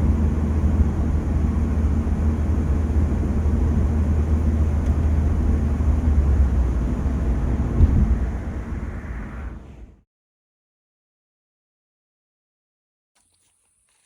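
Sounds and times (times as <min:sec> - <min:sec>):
car engine droning: 0:00.0 - 0:10.0
road noise: 0:00.0 - 0:10.0
sharp thump: 0:07.8 - 0:08.3.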